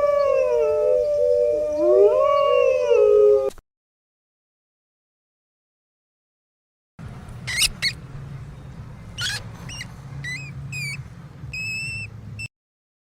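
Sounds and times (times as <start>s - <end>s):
small animal squeaking: 7.4s - 8.0s, 9.2s - 12.2s.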